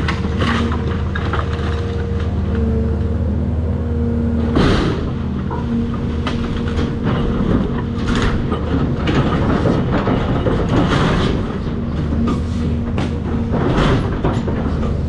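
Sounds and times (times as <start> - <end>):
debris cracking and clattering: 0.0 - 2.4, 6.2 - 12.2, 13.1 - 15.0
excavator diesel engine: 0.0 - 15.0.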